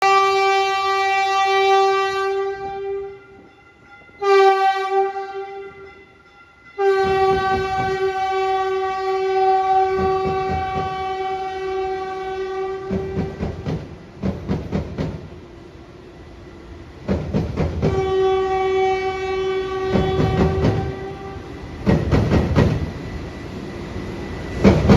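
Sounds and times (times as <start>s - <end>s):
train air horn blasts: 0.0s - 3.4s, 4.1s - 6.1s, 6.8s - 13.7s, 17.8s - 21.6s
train rumble and wheel clatter: 0.0s - 24.9s.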